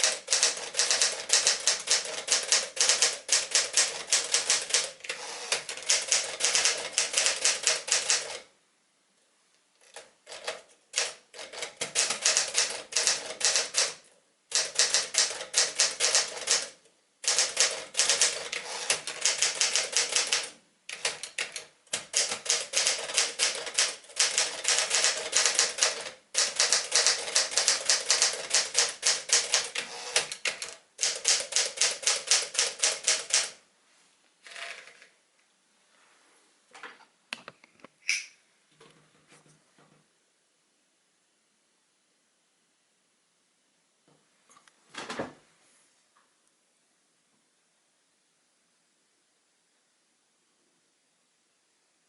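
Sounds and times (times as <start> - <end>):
manual typewriter key strikes: 0.0 - 8.4, 9.9 - 33.6.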